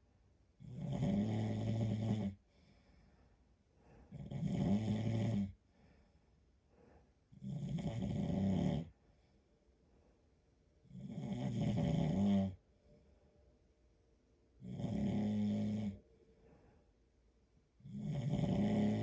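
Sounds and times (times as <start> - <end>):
man snoring: 0.6 - 2.4, 4.1 - 5.6, 7.4 - 8.9, 10.9 - 12.6, 14.6 - 16.0, 17.8 - 19.0.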